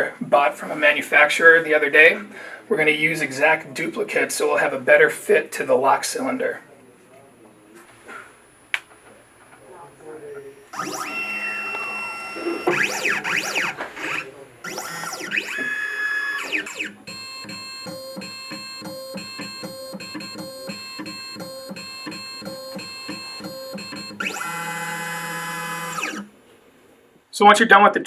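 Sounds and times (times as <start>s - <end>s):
stepper motors whining: 10.6s - 26.3s.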